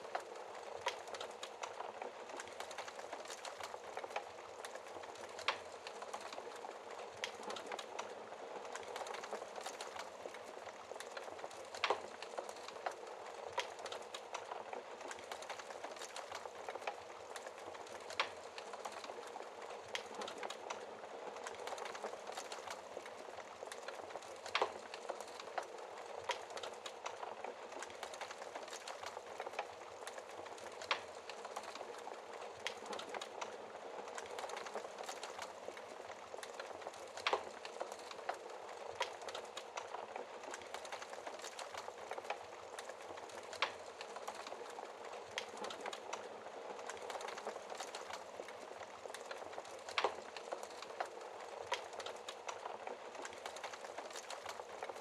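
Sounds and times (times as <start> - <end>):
wood fire crackling: 0.0 - 55.0
fire pops: 21.4 - 55.0.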